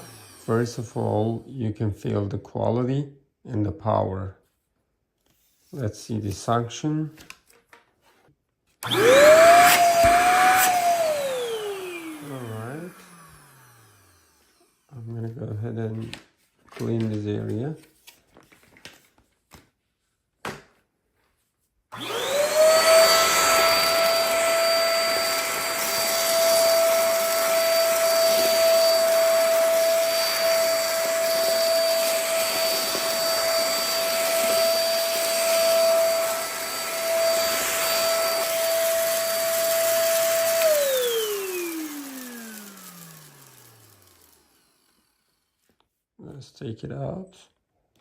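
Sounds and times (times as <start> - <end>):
stick vacuum motor whining: 0.0 - 1.4, 8.8 - 14.9, 21.9 - 45.4.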